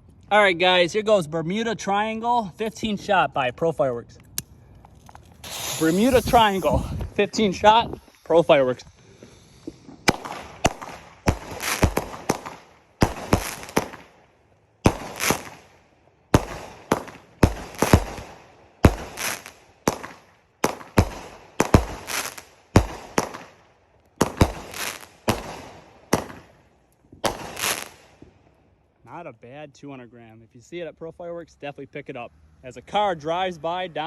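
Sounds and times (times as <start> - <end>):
fireworks aerial breaks: 4.4 - 14.1, 14.8 - 15.7, 16.4 - 23.5, 27.2 - 28.3
fireworks launch bangs: 4.9 - 14.1, 14.8 - 23.6, 24.2 - 28.3.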